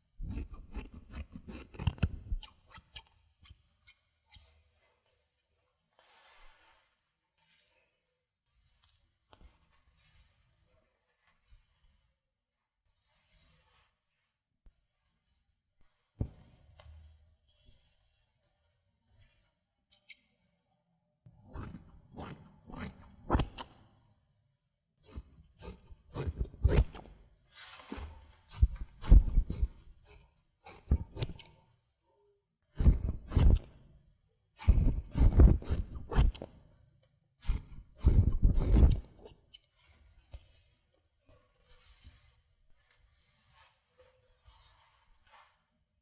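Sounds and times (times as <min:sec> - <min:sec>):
scissors snipping hair: 0:00.2 - 0:03.0, 0:21.5 - 0:23.7, 0:25.1 - 0:27.1, 0:28.5 - 0:31.6, 0:32.8 - 0:33.8, 0:34.6 - 0:36.5, 0:37.4 - 0:39.6.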